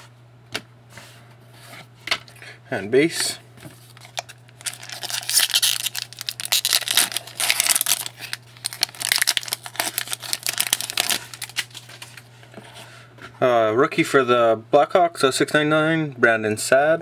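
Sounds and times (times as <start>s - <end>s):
wrapper crinkling and tearing: 3.8s - 12.3s.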